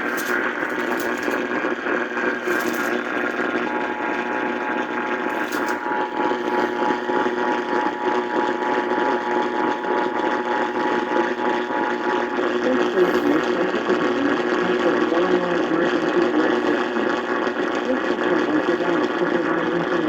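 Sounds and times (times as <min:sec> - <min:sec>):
radio static and hiss: 0:00.0 - 0:07.7, 0:12.3 - 0:20.0.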